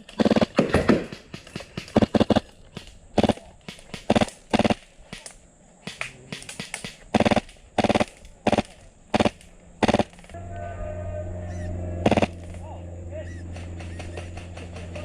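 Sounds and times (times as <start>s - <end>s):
airsoft gun full-auto bursts: 0.0s - 5.3s, 5.9s - 10.4s, 12.0s - 12.5s.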